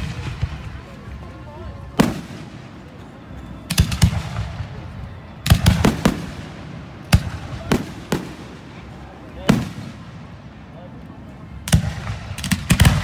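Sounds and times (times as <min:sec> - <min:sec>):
fireworks bangs: 0:00.0 - 0:01.3, 0:01.9 - 0:10.3.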